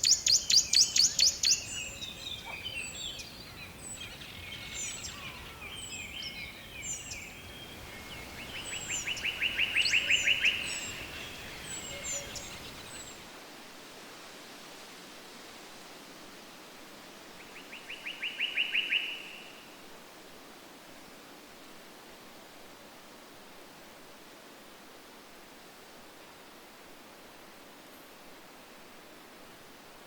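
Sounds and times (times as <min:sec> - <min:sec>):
bird singing a trill: 0:00.0 - 0:13.2
birds chirping: 0:00.0 - 0:13.2
steady hiss: 0:00.0 - 0:30.0.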